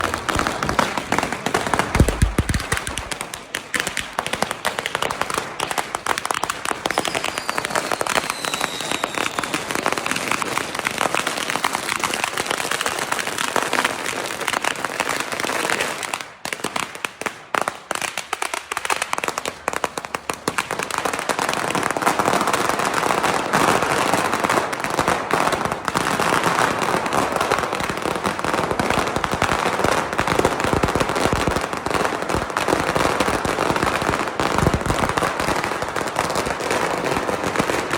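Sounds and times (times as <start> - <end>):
fireworks crackling and popping: 0.0 - 37.9
falling firework whistle: 5.3 - 9.9, 11.2 - 12.2.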